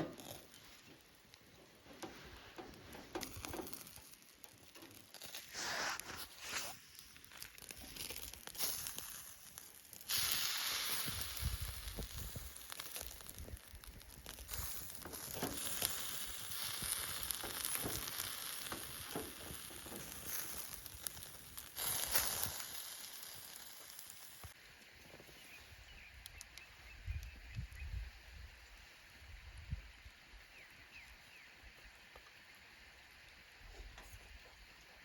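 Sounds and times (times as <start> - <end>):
steak sizzling on grill: 0.0 - 24.6
campfire crackling: 0.0 - 35.0.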